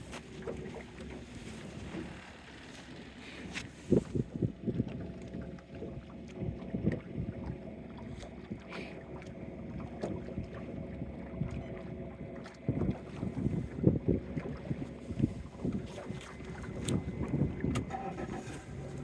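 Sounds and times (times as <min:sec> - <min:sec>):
water slapping against boat hull: 0:00.0 - 0:19.0
wind buffeting microphone: 0:03.5 - 0:05.4, 0:12.6 - 0:19.0.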